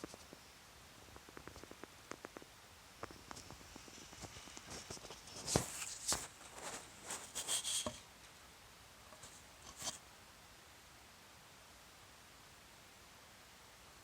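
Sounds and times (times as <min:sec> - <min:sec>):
rustling: 0:00.0 - 0:08.4, 0:09.1 - 0:10.0.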